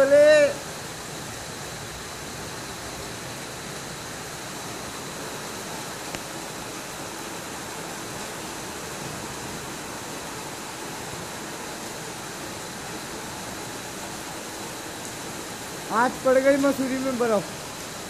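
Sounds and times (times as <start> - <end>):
hail striking the ground: 8.2 - 18.0.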